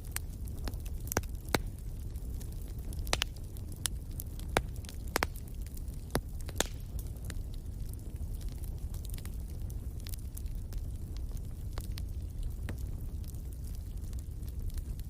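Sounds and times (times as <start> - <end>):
burning logs crackling and popping: 0.0 - 15.0
fire rumbling: 0.0 - 15.0.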